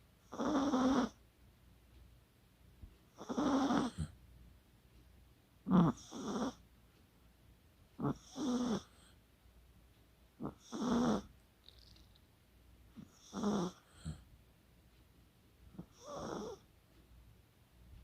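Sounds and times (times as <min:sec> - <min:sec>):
dog snoring: 0:00.2 - 0:01.2, 0:03.1 - 0:04.2, 0:05.6 - 0:06.6, 0:08.0 - 0:09.2, 0:10.4 - 0:11.3, 0:13.0 - 0:14.3, 0:15.7 - 0:16.6.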